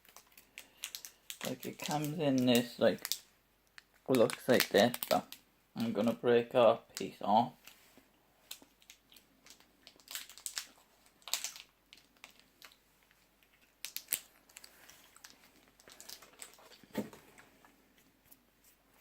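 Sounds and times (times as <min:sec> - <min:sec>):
sweet packet crinkling: 0:00.0 - 0:06.1, 0:08.5 - 0:17.0.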